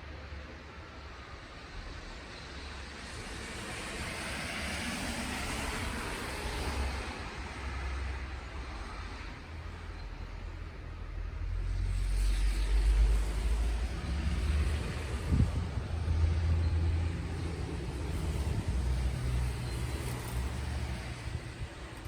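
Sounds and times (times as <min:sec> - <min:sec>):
wind buffeting microphone: 0:13.8 - 0:22.0.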